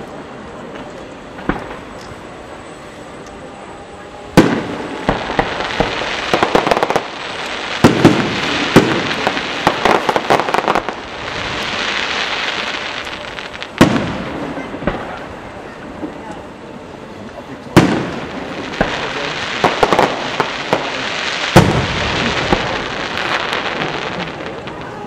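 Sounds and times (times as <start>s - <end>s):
steady hiss: 0.0s - 25.0s
firework shells bursting: 17.7s - 24.7s.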